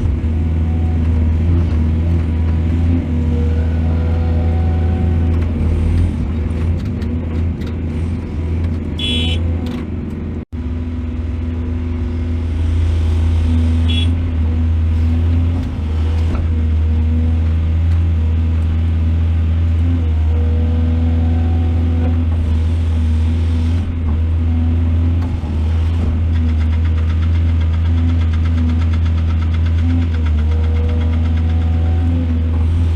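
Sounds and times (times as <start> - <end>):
excavator diesel engine: 0.0 - 32.9.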